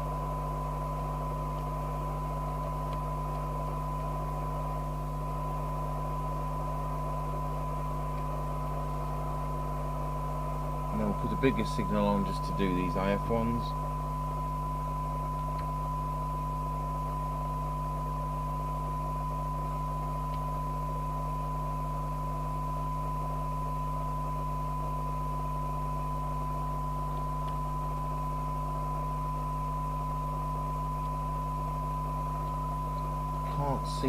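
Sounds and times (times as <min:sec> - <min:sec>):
low mains hum: 0:00.0 - 0:34.0
steady radio test tone: 0:00.0 - 0:34.0.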